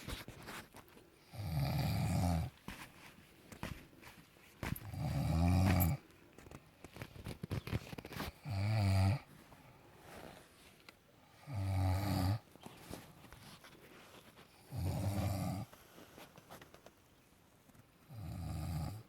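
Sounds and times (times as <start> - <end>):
low snores: 1.3 - 2.5, 4.9 - 6.0, 8.4 - 9.3, 11.4 - 12.5, 14.6 - 15.7, 18.1 - 19.0.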